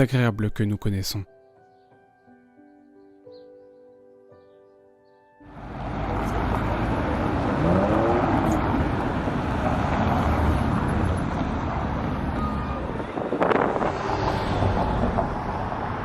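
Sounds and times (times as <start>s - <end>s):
passing vehicles rumble: 5.4s - 16.0s.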